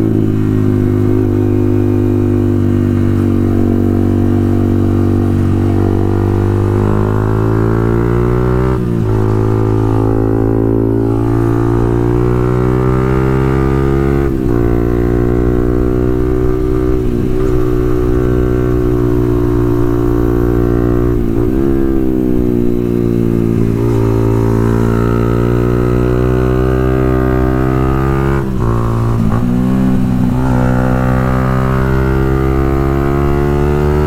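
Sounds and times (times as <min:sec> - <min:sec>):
motorcycle engine running: 0:00.0 - 0:34.0.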